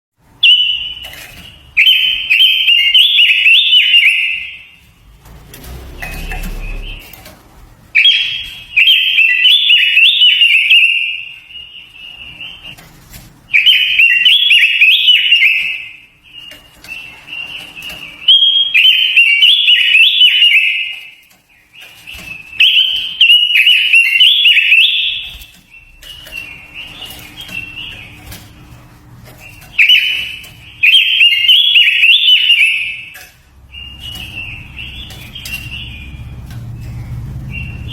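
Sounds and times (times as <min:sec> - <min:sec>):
songbird warbling whistled notes: 0:29.4 - 0:36.3.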